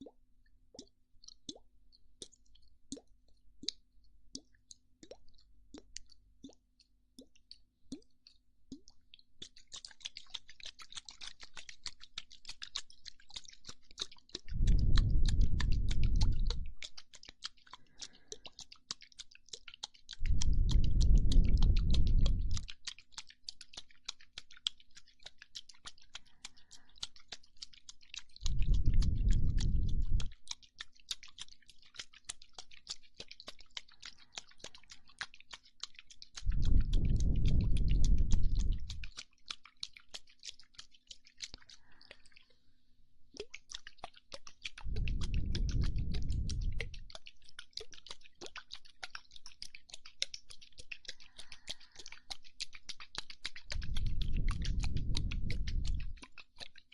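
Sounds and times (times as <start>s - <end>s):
wet mouth clicks and smacks: 0.0s - 42.6s, 43.3s - 56.9s
breath blown onto microphone: 14.5s - 16.7s, 20.2s - 22.7s, 28.4s - 30.3s, 36.4s - 39.1s, 44.8s - 47.1s, 53.7s - 56.2s.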